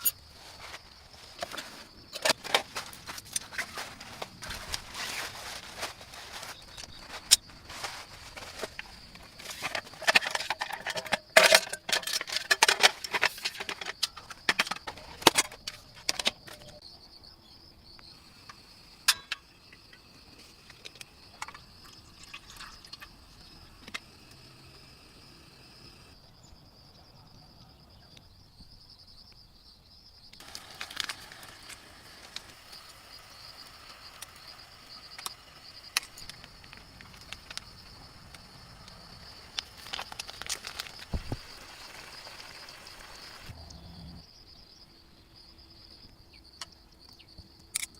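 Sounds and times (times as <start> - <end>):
close rustling: 0.0 - 10.0
night insects chirring: 0.0 - 47.9.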